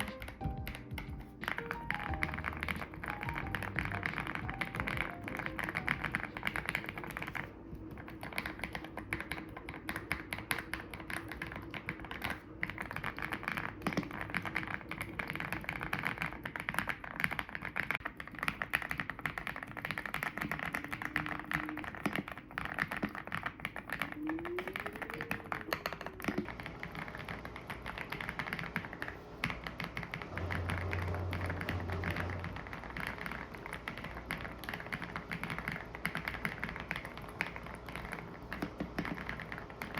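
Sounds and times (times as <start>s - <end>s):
faint background music: 0.0s - 16.9s, 19.9s - 39.9s.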